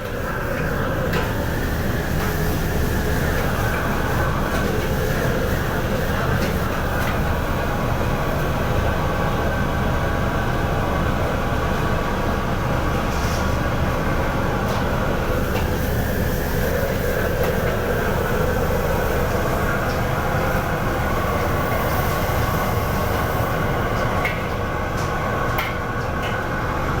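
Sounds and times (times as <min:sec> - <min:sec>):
gas burner and extraction rumble: 0:00.0 - 0:27.0.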